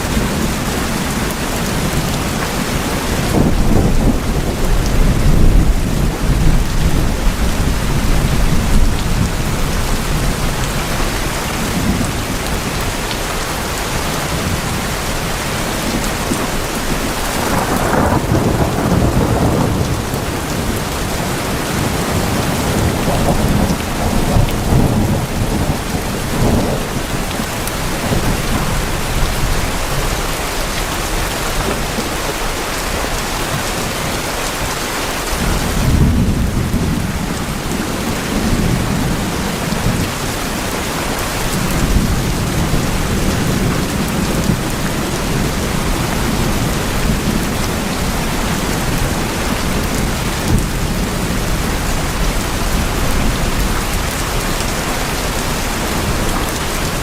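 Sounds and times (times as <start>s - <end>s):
heavy rain on tin roofs: 0.0s - 57.0s
low rolls of thunder: 1.7s - 10.6s, 15.9s - 30.1s, 35.4s - 40.2s.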